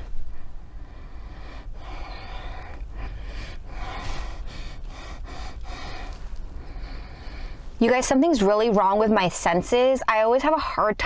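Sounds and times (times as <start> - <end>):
woman sniffing through nose: 1.5 - 6.2.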